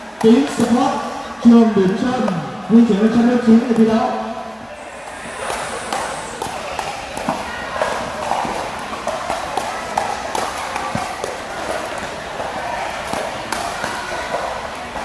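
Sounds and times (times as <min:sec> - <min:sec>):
faint background chatter: 0:00.0 - 0:15.0
footsteps: 0:04.7 - 0:07.6.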